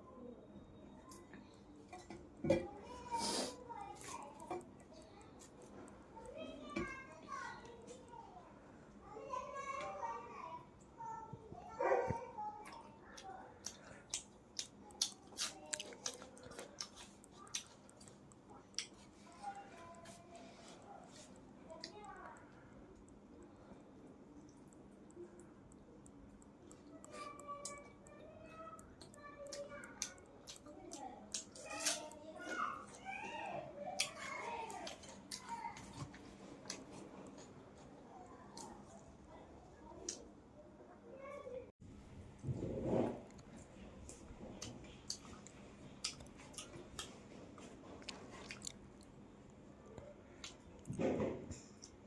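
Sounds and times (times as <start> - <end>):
person chewing food: 12.6 - 33.1, 34.0 - 38.0, 43.2 - 51.0
wet mouth clicks: 48.0 - 49.1.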